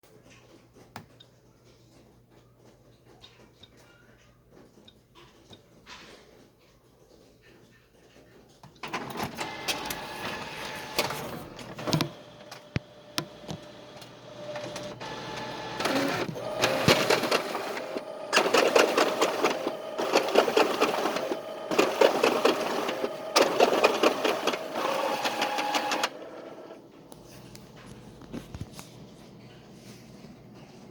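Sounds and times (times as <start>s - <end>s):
printer mechanical clatter: 8.8s - 26.9s.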